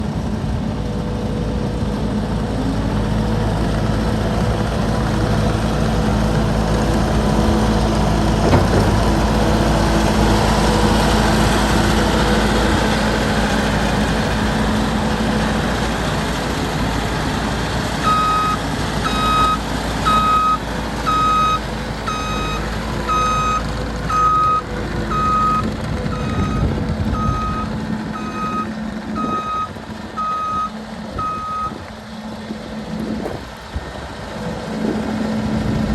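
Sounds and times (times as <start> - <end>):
diesel engine running: 0.0 - 35.9
machine clunk: 8.0 - 10.5
backup alarm beeping: 18.1 - 31.8.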